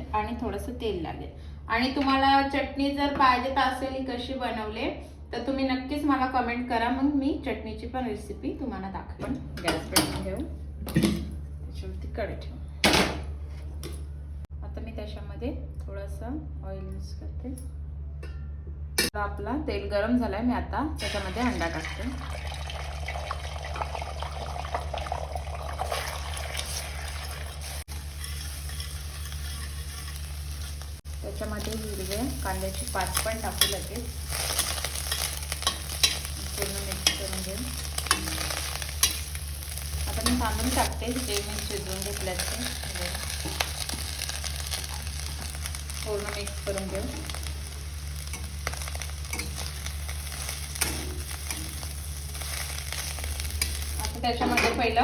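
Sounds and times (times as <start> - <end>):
eggs sizzling in oil: 21.0 - 55.0
steady low hum: 26.2 - 55.0
spatula scraping pan: 26.6 - 31.0.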